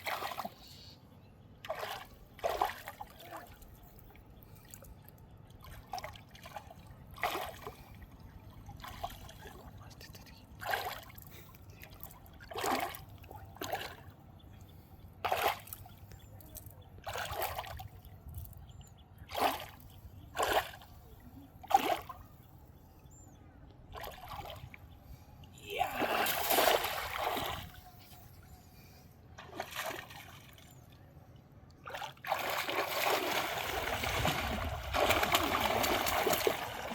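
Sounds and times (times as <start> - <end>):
water splashing and sloshing: 0.0 - 0.7, 1.6 - 14.3, 15.2 - 22.5, 23.8 - 25.0, 25.6 - 28.5, 29.3 - 36.9.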